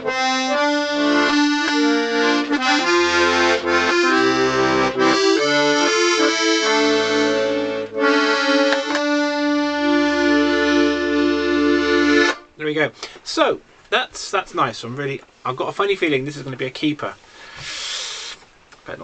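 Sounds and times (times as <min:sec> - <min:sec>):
accordion melody: 0:00.0 - 0:12.6.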